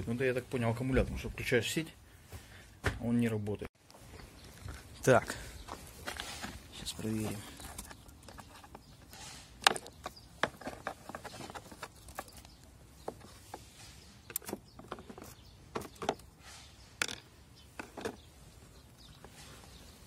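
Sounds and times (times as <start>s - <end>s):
hands and tools clicking on parts: 7.2s - 16.3s.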